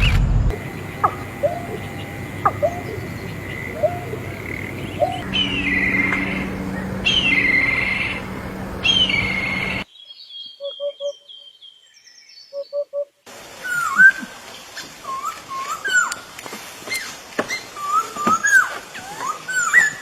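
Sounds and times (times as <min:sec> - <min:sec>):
bird twittering: 0:00.5 - 0:09.8
upward-sweeping bird calls: 0:00.5 - 0:11.7
descending bird chirps: 0:00.5 - 0:12.8.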